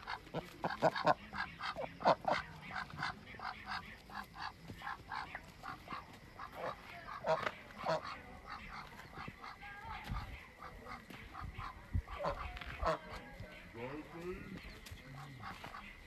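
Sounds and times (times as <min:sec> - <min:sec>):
duck quacking: 0:00.0 - 0:14.1, 0:15.1 - 0:16.0.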